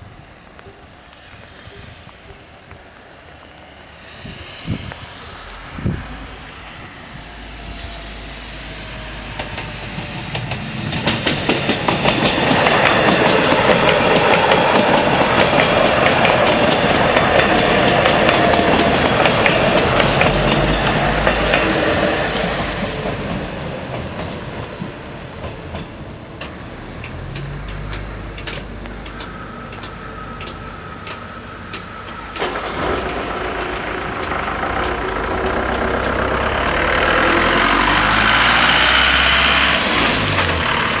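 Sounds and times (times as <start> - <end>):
train wheels clattering: 0.4 - 41.0
level crossing warning bells: 7.3 - 24.8, 25.8 - 41.0.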